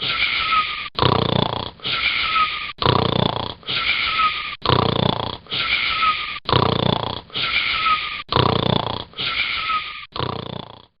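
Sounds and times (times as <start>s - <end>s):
wheezing whistling breath: 0.0s - 0.9s, 1.8s - 2.8s, 3.6s - 4.6s, 5.5s - 6.4s, 7.3s - 8.3s, 9.1s - 10.1s
rattling snoring: 0.0s - 11.0s.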